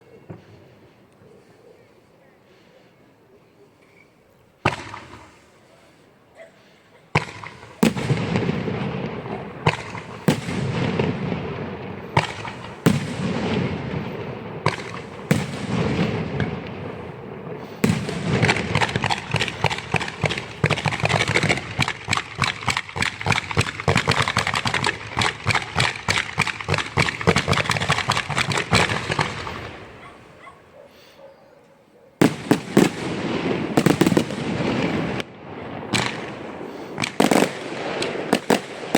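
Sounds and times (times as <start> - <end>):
rapid firework cracks: 4.6 - 5.4, 7.2 - 30.0, 32.2 - 38.9
firework bangs with rumbling echo: 7.2 - 30.0, 32.2 - 38.9.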